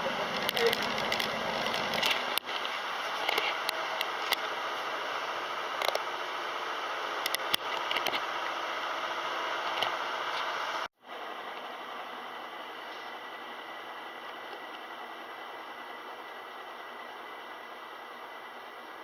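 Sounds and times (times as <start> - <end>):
washing machine running: 0.0 - 7.6.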